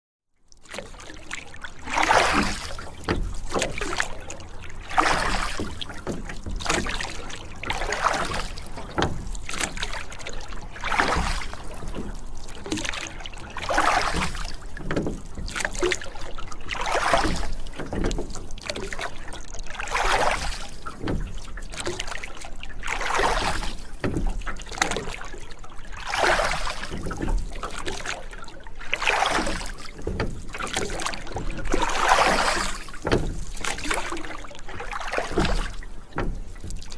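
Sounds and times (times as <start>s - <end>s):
oars splashing through water: 0.5s - 36.9s
small knocks: 8.4s - 9.9s, 14.7s - 16.0s, 32.9s - 33.9s, 35.3s - 36.9s.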